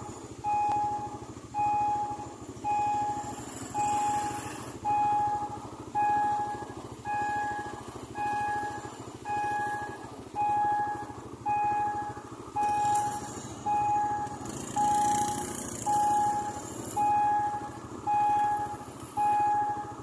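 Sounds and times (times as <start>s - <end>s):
level-crossing warning beeps: 0.0s - 20.0s
motor vehicle passing: 2.6s - 10.5s, 11.5s - 19.4s.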